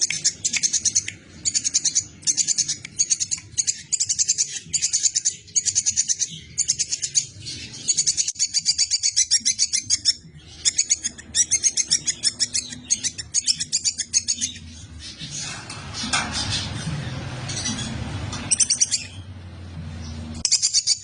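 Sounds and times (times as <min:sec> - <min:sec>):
squirrel chattering chirps: 0:00.0 - 0:15.3.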